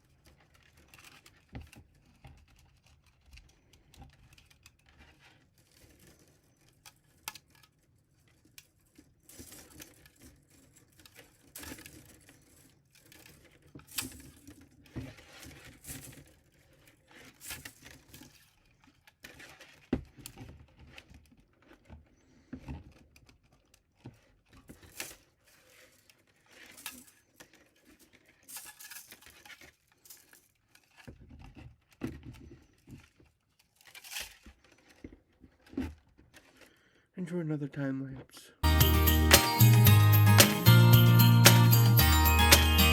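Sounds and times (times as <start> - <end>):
filament rustling and crinkling: 0.0 - 36.9.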